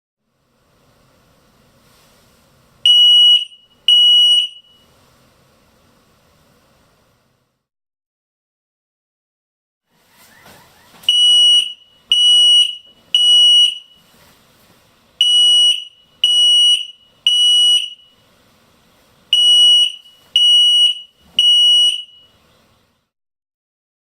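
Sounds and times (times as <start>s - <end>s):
smoke alarm beeping: 2.9s - 4.9s, 11.1s - 14.2s, 15.2s - 18.2s, 19.3s - 22.4s.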